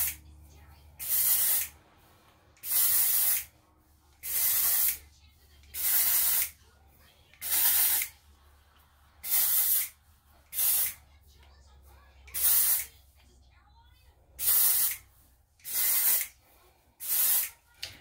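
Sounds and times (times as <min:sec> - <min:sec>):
spray can hissing: 0:01.0 - 0:01.8, 0:02.6 - 0:03.5, 0:04.2 - 0:05.0, 0:05.8 - 0:06.6, 0:07.4 - 0:08.2, 0:09.2 - 0:11.0, 0:12.3 - 0:12.9, 0:14.4 - 0:16.3, 0:17.0 - 0:17.6.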